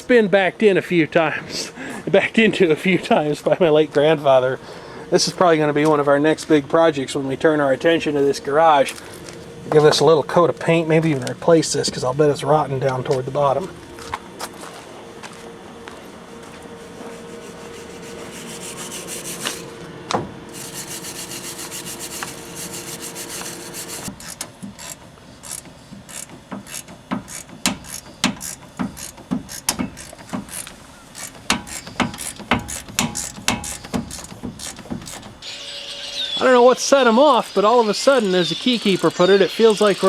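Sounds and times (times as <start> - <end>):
faint hum: 0.0 - 40.0
hand tool rubbing: 16.4 - 19.8, 20.5 - 35.4
hand tool scraping: 16.4 - 19.8, 20.5 - 35.5.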